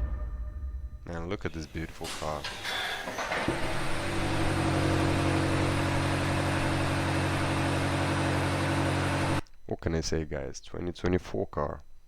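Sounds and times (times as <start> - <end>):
car engine idling: 3.5 - 9.4.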